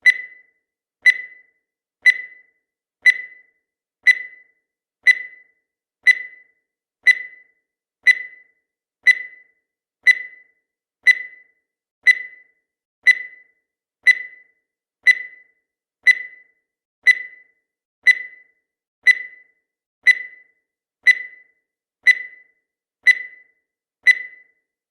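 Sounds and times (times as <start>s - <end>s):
short high timer beeps: 0.0s - 3.5s, 4.1s - 4.5s, 12.1s - 12.5s, 13.1s - 13.5s, 17.1s - 17.5s, 23.1s - 23.5s, 24.1s - 24.5s.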